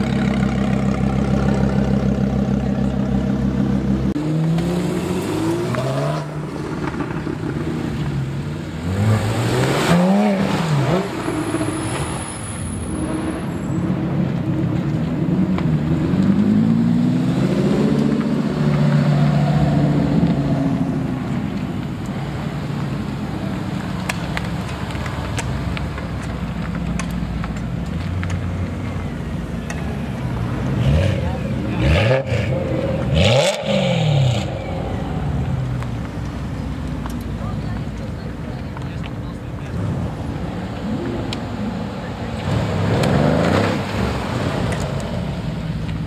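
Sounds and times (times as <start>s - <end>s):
car engine idling: 0.0s - 4.2s.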